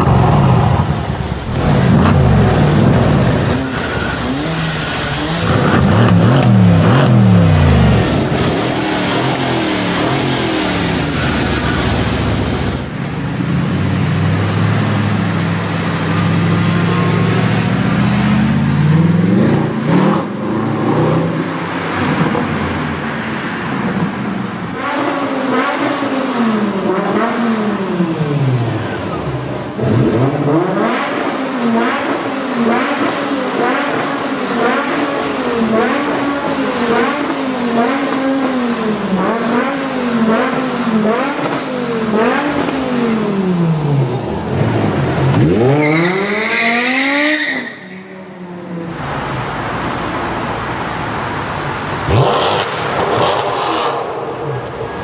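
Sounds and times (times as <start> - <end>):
car engine revving hard: 0.0 - 12.8, 29.7 - 47.5, 52.0 - 54.3.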